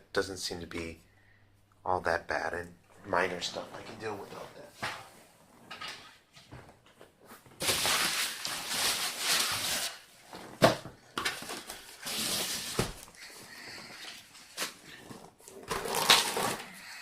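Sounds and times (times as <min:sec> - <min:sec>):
packaging rustling: 0:07.3 - 0:16.8.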